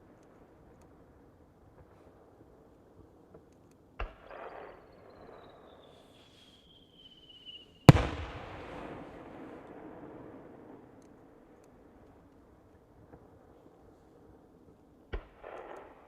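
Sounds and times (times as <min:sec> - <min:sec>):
firework launch thump: 0:07.9 - 0:09.2
firework bang with rumbling echo: 0:07.9 - 0:10.8.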